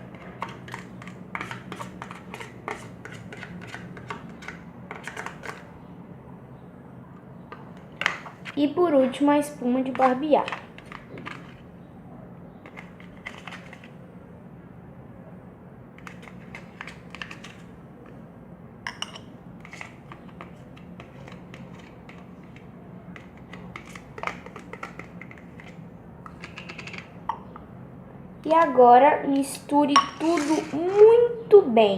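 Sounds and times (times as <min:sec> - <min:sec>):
containers and spoon clicking: 0:00.0 - 0:05.6, 0:12.6 - 0:13.9, 0:16.0 - 0:18.2, 0:18.9 - 0:27.6.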